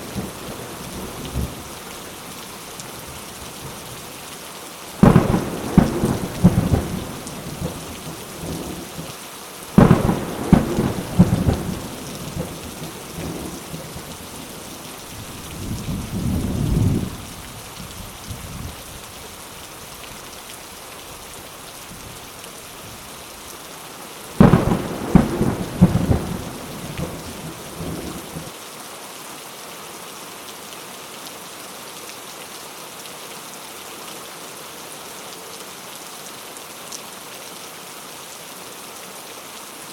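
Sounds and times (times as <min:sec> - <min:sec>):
heavy rain hissing: 0:00.0 - 0:28.6
thunder cracks and rumble: 0:05.0 - 0:07.9, 0:09.8 - 0:13.9, 0:15.5 - 0:17.3, 0:24.4 - 0:28.5.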